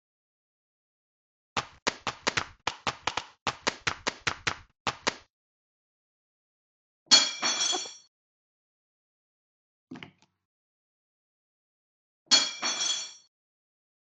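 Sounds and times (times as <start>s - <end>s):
sharp claps: 1.6s - 5.3s.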